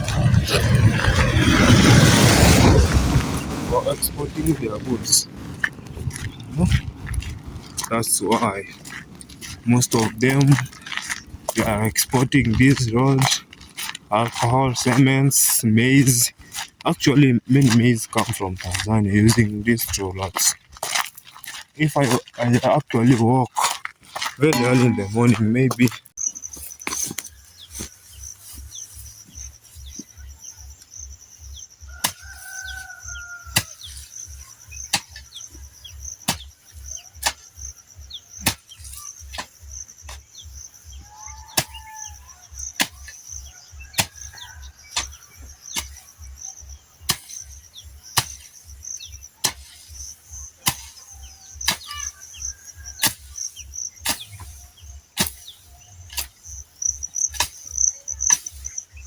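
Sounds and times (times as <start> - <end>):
cricket trill: 0.0 - 59.0
bird calls: 3.3 - 59.0
hoe chopping into soil: 17.6 - 29.2, 32.0 - 34.2, 34.8 - 37.6, 38.4 - 40.5, 41.5 - 46.2, 47.0 - 58.8.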